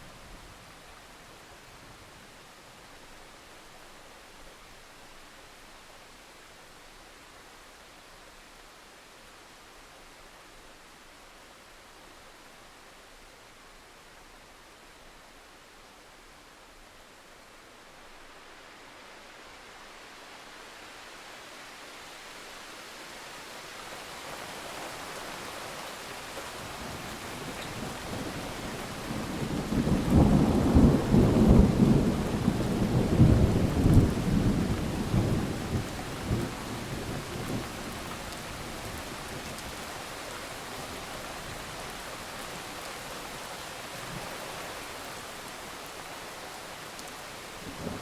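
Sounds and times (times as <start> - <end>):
steady rain: 0.0 - 48.0.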